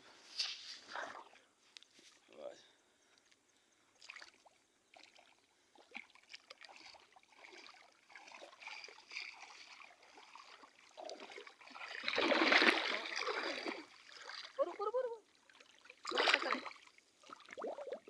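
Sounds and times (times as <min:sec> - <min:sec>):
water splashing and trickling: 0:04.0 - 0:18.0.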